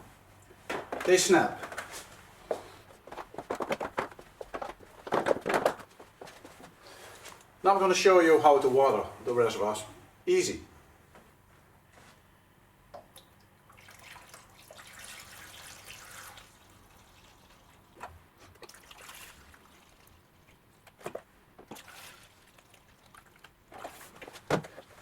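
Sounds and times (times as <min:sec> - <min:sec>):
water trickling into planter: 0:13.0 - 0:20.9, 0:21.6 - 0:23.9.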